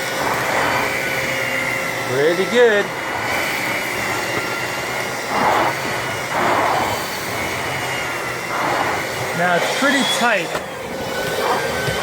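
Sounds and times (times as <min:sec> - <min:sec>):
vacuum cleaner motor whine: 0:00.0 - 0:12.0.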